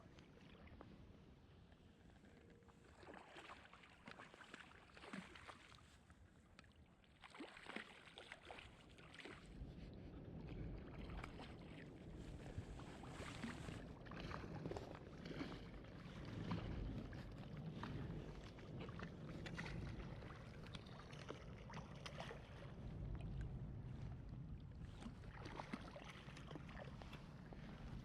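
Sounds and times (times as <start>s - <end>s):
water sloshing and splashing: 0.0s - 28.0s
steady low rumble: 9.6s - 28.0s.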